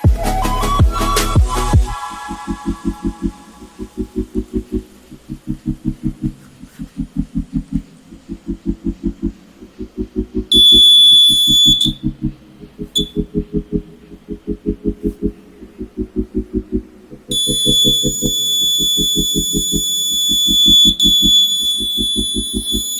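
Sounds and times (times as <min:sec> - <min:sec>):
music with pulsing low beat: 0:00.0 - 0:22.9
alarm buzzer high tone: 0:10.5 - 0:12.0, 0:13.0 - 0:13.2, 0:17.3 - 0:22.9
short alarm chirp: 0:10.5 - 0:12.0, 0:13.0 - 0:13.2, 0:17.3 - 0:22.9.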